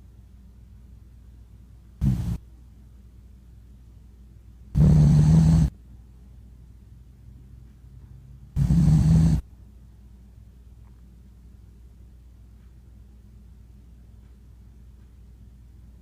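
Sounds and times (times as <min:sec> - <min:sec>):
dog snoring: 0:02.0 - 0:02.4, 0:04.8 - 0:05.7, 0:08.6 - 0:09.4.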